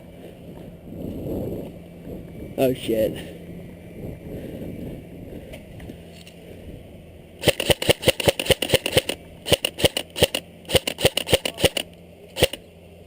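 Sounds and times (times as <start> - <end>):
airsoft gun rapid shots: 7.4 - 12.6.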